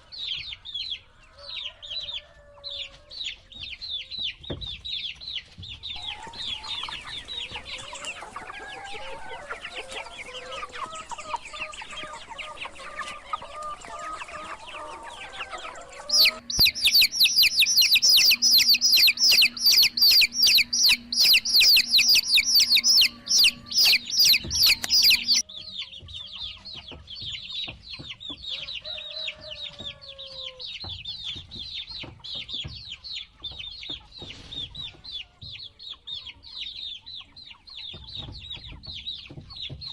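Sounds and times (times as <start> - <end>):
baby chicks peeping: 0.0 - 39.9
lower longer bird calls: 16.0 - 25.4.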